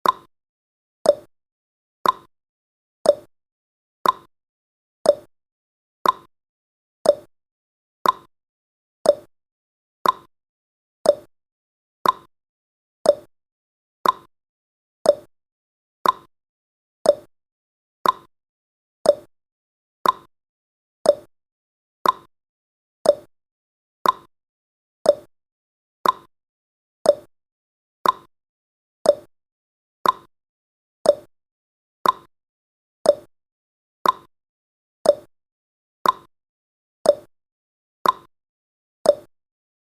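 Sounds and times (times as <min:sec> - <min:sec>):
timer ticking: 0:00.0 - 0:00.3, 0:01.0 - 0:01.3, 0:02.0 - 0:02.3, 0:03.0 - 0:03.3, 0:04.0 - 0:04.3, 0:05.1 - 0:05.3, 0:06.0 - 0:06.3, 0:07.0 - 0:07.3, 0:08.0 - 0:08.3, 0:09.0 - 0:09.3, 0:10.0 - 0:10.3, 0:11.0 - 0:11.3, 0:12.0 - 0:12.3, 0:13.0 - 0:13.3, 0:14.0 - 0:14.3, 0:15.0 - 0:15.3, 0:16.0 - 0:16.3, 0:17.0 - 0:17.3, 0:18.0 - 0:18.3, 0:19.0 - 0:19.3, 0:20.0 - 0:20.3, 0:21.0 - 0:21.3, 0:22.0 - 0:22.3, 0:23.0 - 0:23.3, 0:24.0 - 0:24.3, 0:25.0 - 0:25.3, 0:26.0 - 0:26.3, 0:27.0 - 0:27.3, 0:28.0 - 0:28.3, 0:29.0 - 0:29.3, 0:30.0 - 0:30.3, 0:31.0 - 0:31.3, 0:32.0 - 0:32.3, 0:33.0 - 0:33.3, 0:34.0 - 0:34.3, 0:35.0 - 0:35.3, 0:36.0 - 0:36.3, 0:37.1 - 0:37.3, 0:38.0 - 0:38.3, 0:39.1 - 0:39.3.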